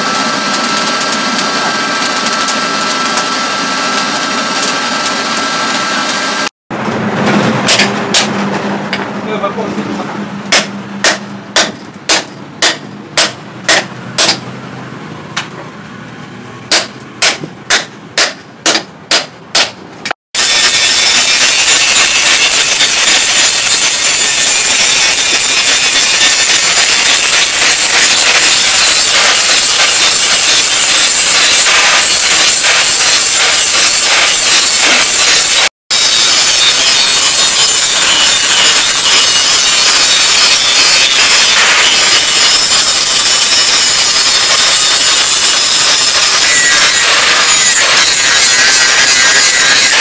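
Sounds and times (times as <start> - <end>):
hammer striking steel: 7.7 - 9.0, 10.5 - 14.5, 16.7 - 50.0
loud grinding on steel: 20.4 - 50.0.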